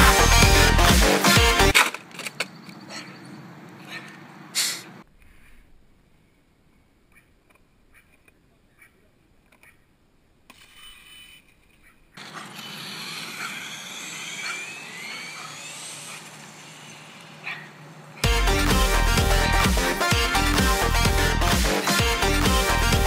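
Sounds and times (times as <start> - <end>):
loud electronic music: 0.0 - 1.8, 18.2 - 23.0
rc car motor whining: 12.2 - 17.8.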